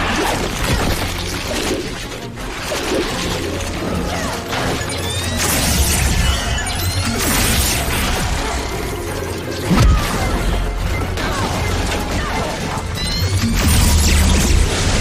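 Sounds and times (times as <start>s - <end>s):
dramatic music: 0.0s - 15.0s.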